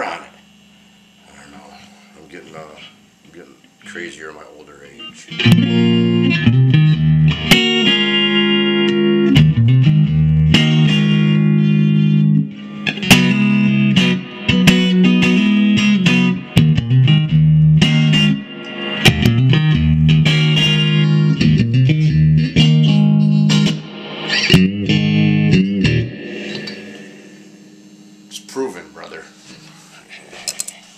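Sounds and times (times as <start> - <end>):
electric guitar playing: 0.0 - 29.9.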